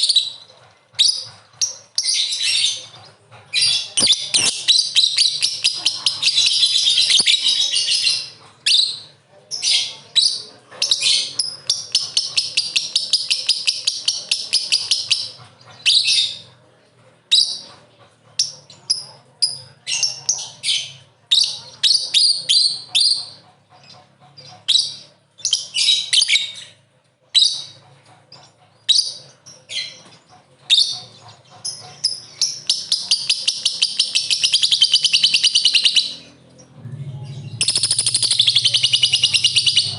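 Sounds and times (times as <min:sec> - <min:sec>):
bird chirps: 0:00.0 - 0:16.5, 0:27.4 - 0:39.9
bird singing chattering trills: 0:00.0 - 0:16.5, 0:28.4 - 0:39.9.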